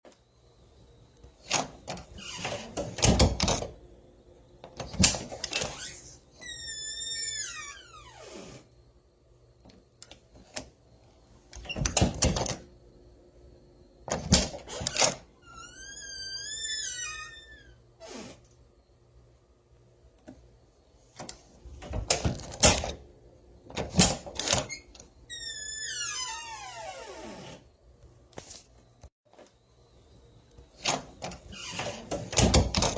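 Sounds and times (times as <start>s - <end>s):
door hinges creaking: 1.4s - 3.8s, 4.7s - 8.6s, 11.6s - 12.6s, 14.1s - 18.4s, 21.2s - 23.0s, 23.7s - 27.6s, 30.8s - 32.9s
door banging shut: 1.5s - 3.8s, 23.7s - 24.8s, 30.8s - 32.9s.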